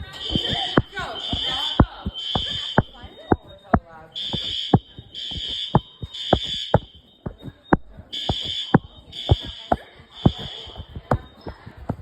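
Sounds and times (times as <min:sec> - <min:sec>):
high-pitched fire alarm horn blasts: 0:00.0 - 0:11.5
regular thumps: 0:00.0 - 0:12.0.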